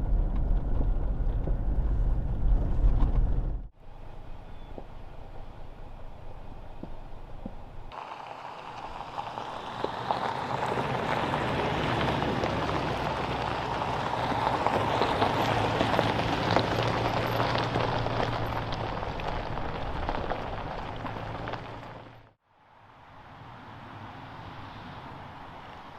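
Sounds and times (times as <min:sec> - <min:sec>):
engine hum: 0:00.0 - 0:25.9
tyres crunching over gravel: 0:06.7 - 0:22.4.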